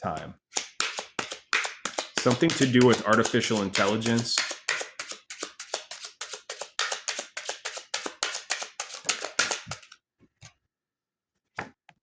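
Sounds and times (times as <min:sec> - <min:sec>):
soft card taps: 0:00.1 - 0:09.9
cards being shuffled: 0:00.5 - 0:10.0.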